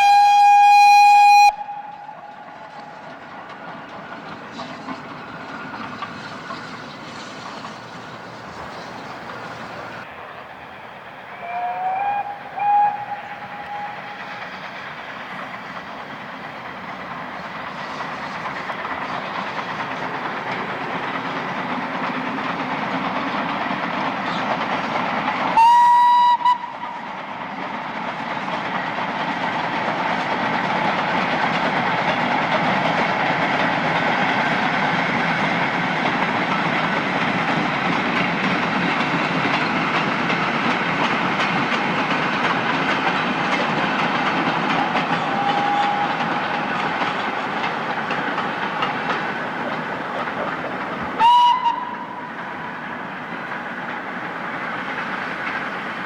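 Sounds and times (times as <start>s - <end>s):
steam locomotive whistle: 0.0s - 3.2s, 11.2s - 14.8s, 25.5s - 27.3s, 43.1s - 47.7s, 51.2s - 52.8s
train running noise: 0.0s - 56.0s.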